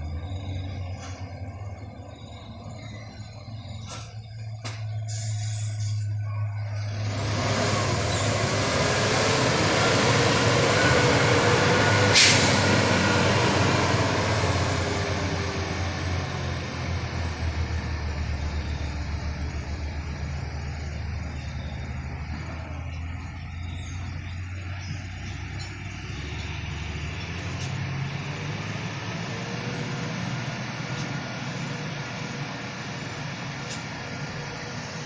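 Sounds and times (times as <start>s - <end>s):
truck diesel engine passing: 0.0s - 35.0s
short sharp hiss: 12.1s - 12.6s.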